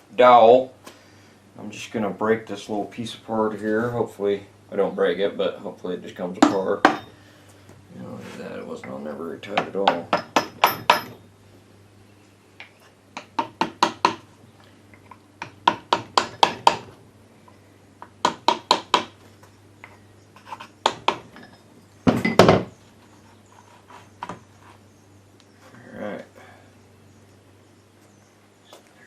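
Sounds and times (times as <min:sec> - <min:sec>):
wooden mallet tapping metal: 0:09.6 - 0:11.2.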